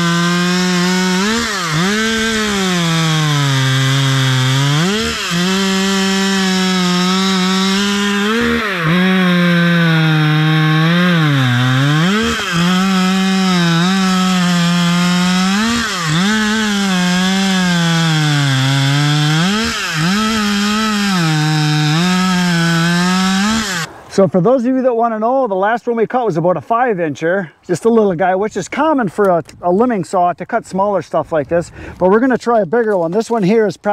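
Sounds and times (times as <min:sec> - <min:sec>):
chainsaw cutting log: 0:00.0 - 0:23.9.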